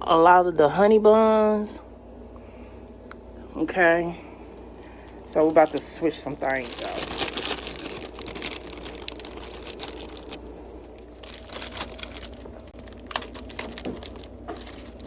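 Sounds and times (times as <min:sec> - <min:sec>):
plastic packages crinkling: 0:04.8 - 0:15.0.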